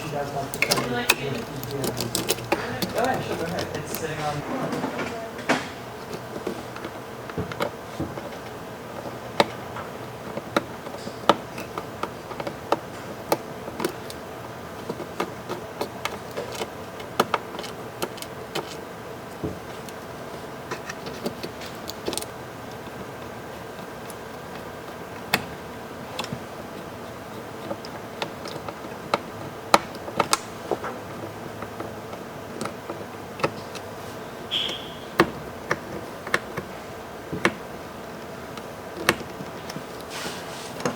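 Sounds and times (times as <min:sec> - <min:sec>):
plastic parts clicking: 0:00.0 - 0:04.4, 0:06.0 - 0:33.9
steady low hum: 0:00.0 - 0:40.9.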